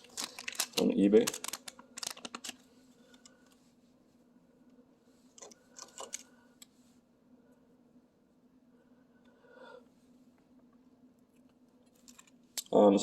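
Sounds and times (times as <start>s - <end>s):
low steady hum: 0.0s - 13.0s
clicks of small objects handled: 5.4s - 6.7s, 11.4s - 12.7s.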